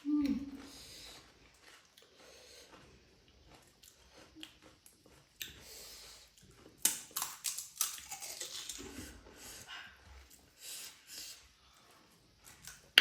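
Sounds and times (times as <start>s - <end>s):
chewing: 0.0s - 13.0s
breathy hiss: 2.0s - 3.0s, 5.6s - 6.4s, 8.8s - 12.1s.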